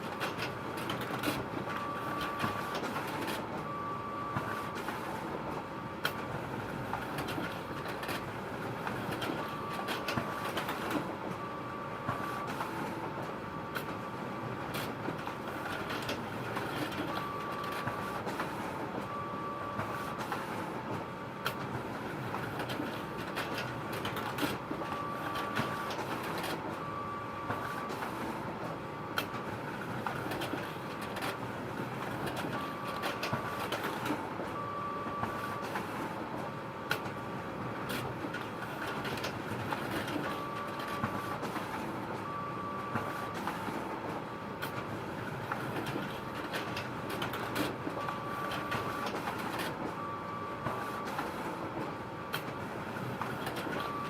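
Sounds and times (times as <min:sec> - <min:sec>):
photocopier whirring: 0:00.0 - 0:54.0.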